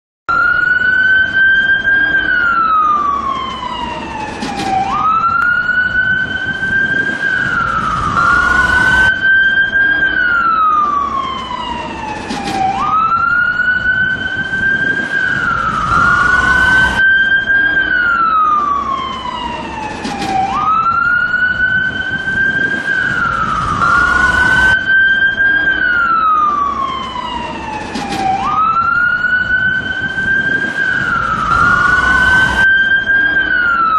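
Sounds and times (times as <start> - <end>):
ambulance siren wailing: 0.3 - 33.9
low rumble of vehicle noise: 0.3 - 33.9.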